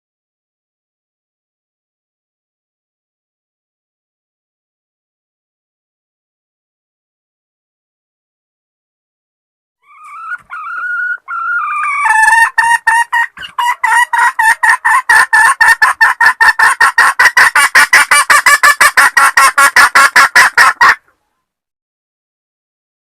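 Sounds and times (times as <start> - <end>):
hen clucking call: 9.8 - 21.3.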